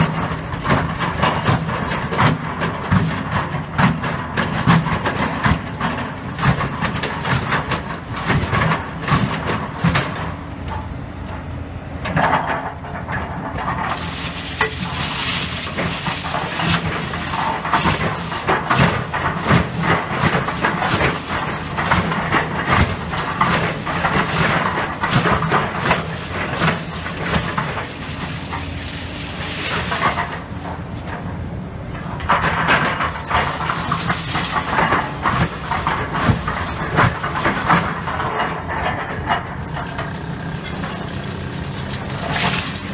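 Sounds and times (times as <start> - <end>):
excavator diesel engine: 0.0 - 42.9
rubble clanking and scraping: 0.0 - 42.9.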